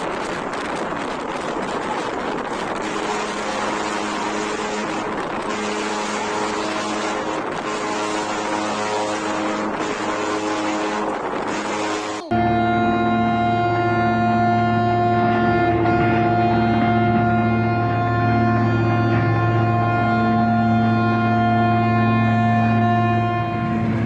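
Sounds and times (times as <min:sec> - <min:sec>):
wind and water rushing: 0:00.0 - 0:12.3
droning hum: 0:00.0 - 0:24.0.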